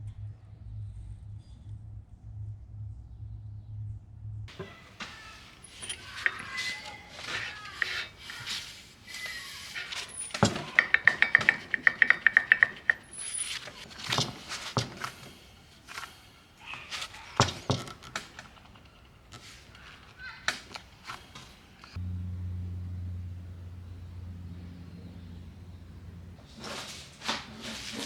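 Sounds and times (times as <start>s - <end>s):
metal knocks and clanks: 4.5s - 22.0s, 22.7s - 28.0s
run of sharp ticks: 4.5s - 22.0s.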